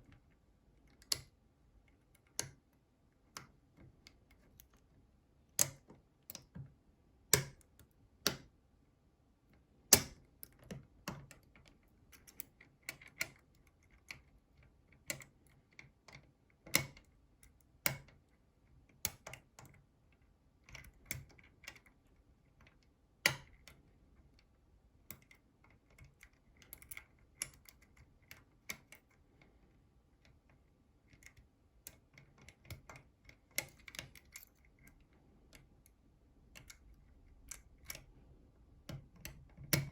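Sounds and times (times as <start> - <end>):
lock tools clicking in a lock: 9.9 - 18.2, 25.1 - 29.2, 31.1 - 35.0, 38.9 - 39.9.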